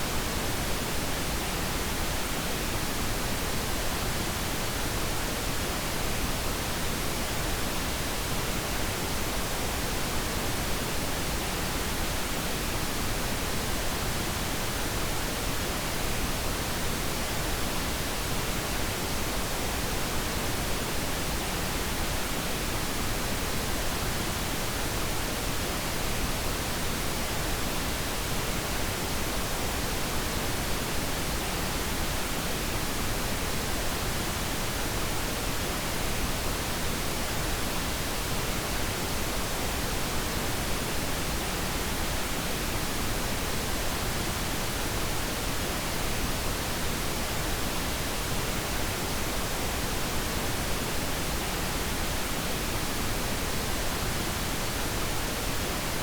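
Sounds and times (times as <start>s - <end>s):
steady pink noise hiss: 0.0s - 56.0s.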